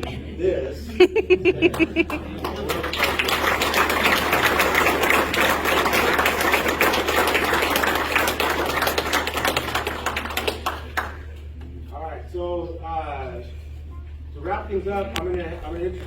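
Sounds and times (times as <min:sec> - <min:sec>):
audience applauding: 0:01.7 - 0:11.4.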